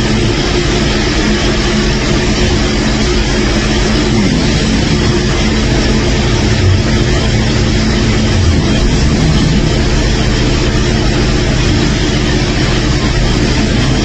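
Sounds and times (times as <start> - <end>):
loud fluttering snoring: 3.9 - 11.7.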